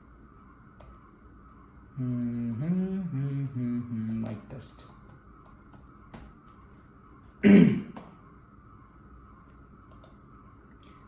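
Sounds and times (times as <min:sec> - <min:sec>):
person clearing throat: 0:07.4 - 0:08.0.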